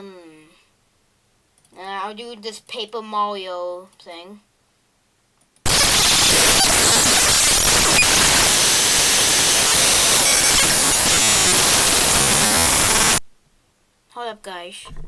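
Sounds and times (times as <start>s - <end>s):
harsh static: 5.7s - 13.3s.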